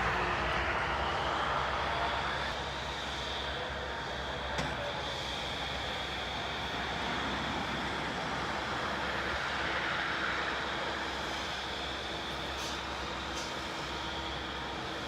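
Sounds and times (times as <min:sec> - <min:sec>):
large engine running: 0:00.0 - 0:15.0.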